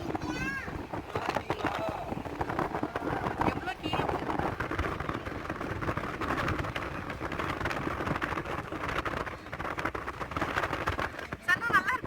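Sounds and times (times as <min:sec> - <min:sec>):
car road and engine noise: 0:00.0 - 0:12.0.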